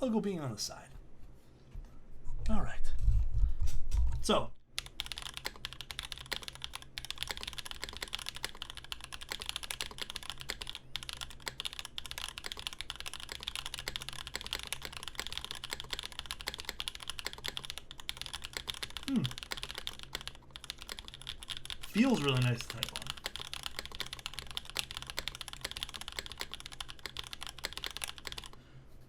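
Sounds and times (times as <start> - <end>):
fast typing on mechanical keyboard: 4.7 - 28.6.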